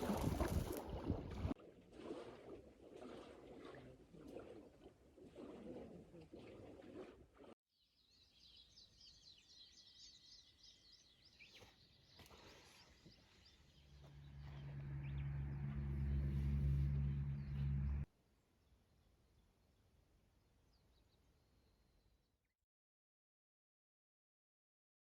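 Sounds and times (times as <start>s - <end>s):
birds chirping: 8.0s - 18.1s
low engine-like hum: 13.8s - 18.1s.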